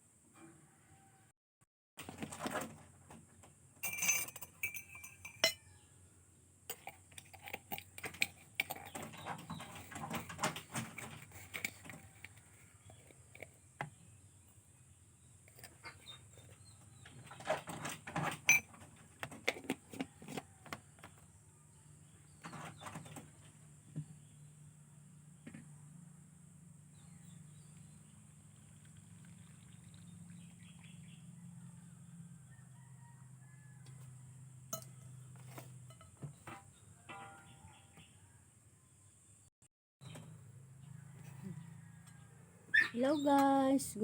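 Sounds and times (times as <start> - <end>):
dishes and utensils clinking: 3.8 - 5.7, 6.7 - 13.5, 17.5 - 20.2, 34.7 - 37.6.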